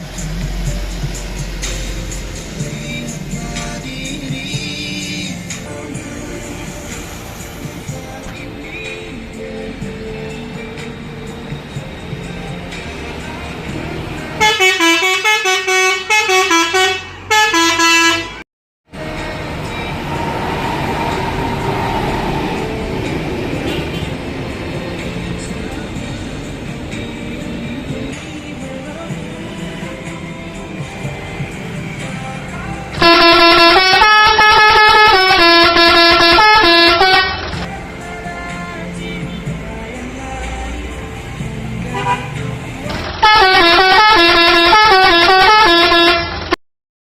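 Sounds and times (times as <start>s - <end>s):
steady vehicle noise: 0.0s - 46.6s
truck horn playing a tune: 14.3s - 18.4s, 19.0s - 24.4s, 33.0s - 37.6s, 41.8s - 42.5s, 43.2s - 46.5s
guitar music: 18.9s - 35.0s.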